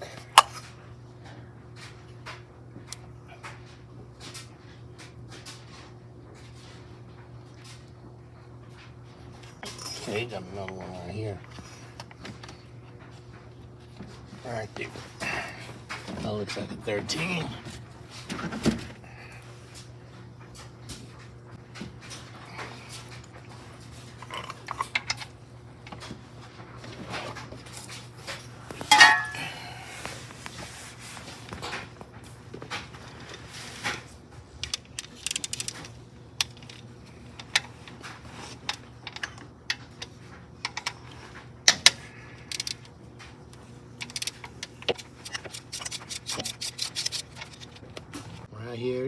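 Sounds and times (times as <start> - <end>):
steady low hum: 6.1 - 49.0
tool clatter: 28.8 - 29.5, 44.0 - 48.5
metal tools clinking: 28.9 - 29.6
socket ratchet clicking: 34.7 - 36.8.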